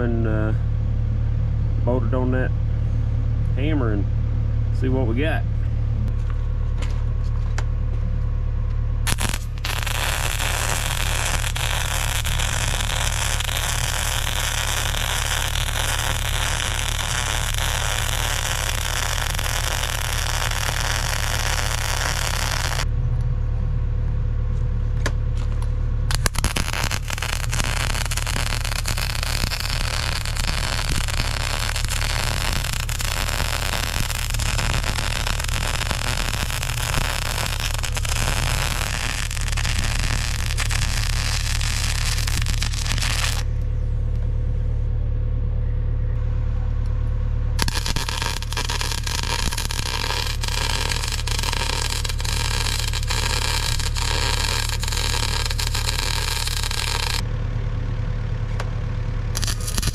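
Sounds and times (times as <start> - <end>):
low hum: 0.0 - 59.9
welding arc crackling: 9.0 - 22.9, 26.1 - 43.5, 47.6 - 57.2, 59.4 - 59.9.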